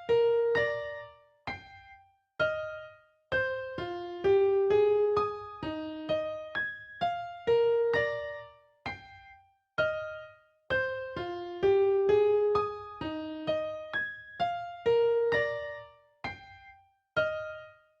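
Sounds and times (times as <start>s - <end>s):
slow piano-like keyboard melody: 0.0s - 18.0s.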